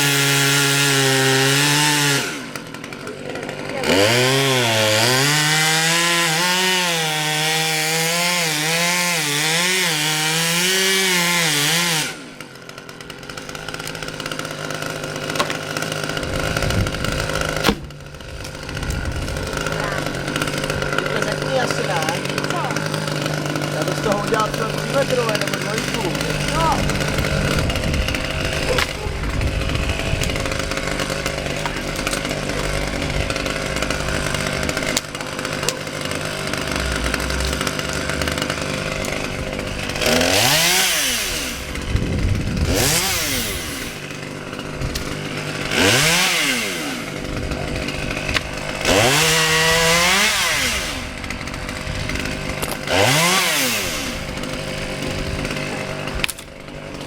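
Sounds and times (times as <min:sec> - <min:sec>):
chainsaw revving: 0:00.0 - 0:57.0.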